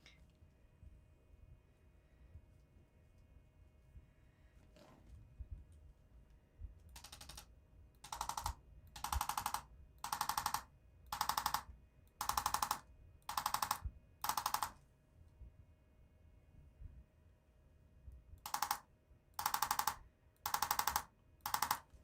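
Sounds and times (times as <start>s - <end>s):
rapid clicking taps: 8.0s - 14.7s, 18.5s - 18.8s, 19.4s - 21.8s.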